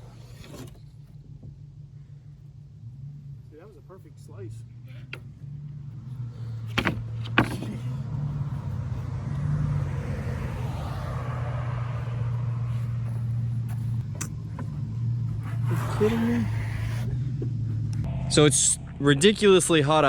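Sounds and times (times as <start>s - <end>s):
sharp knocks: 6.6s - 7.9s.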